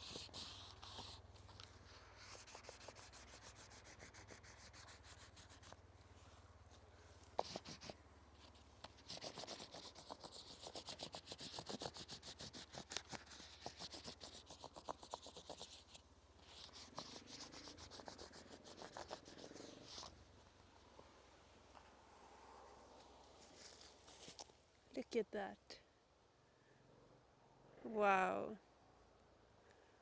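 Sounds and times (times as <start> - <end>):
paper scraping on tree bark: 0.0 - 5.8, 7.3 - 20.1, 23.4 - 24.5.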